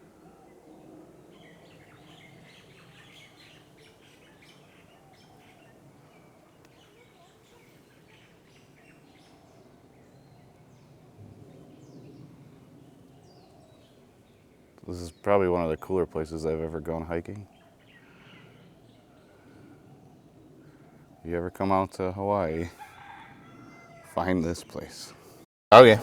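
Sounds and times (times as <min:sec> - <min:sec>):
low background noise: 0:00.0 - 0:26.0
birds chirping and whistling: 0:00.8 - 0:07.0.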